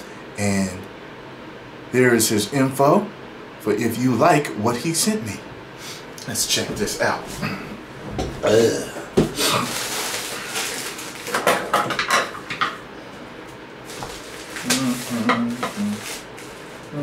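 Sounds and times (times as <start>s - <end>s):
packaging rustling and crinkling: 9.5s - 11.8s, 13.8s - 17.0s
man humming: 14.6s - 16.2s.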